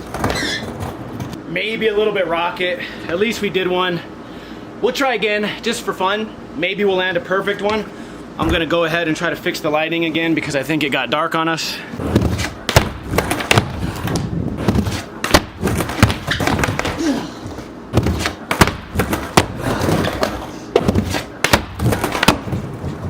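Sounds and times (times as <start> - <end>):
skateboard clacks and thuds: 0.0 - 1.4, 12.0 - 23.0
skateboard wheels rolling on ramp: 0.0 - 1.4, 12.0 - 23.0.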